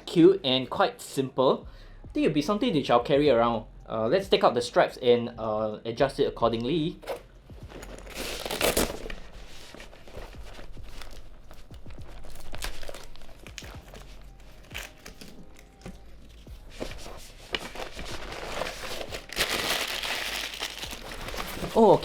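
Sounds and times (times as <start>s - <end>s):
packaging crinkling and rustling: 7.0s - 22.0s.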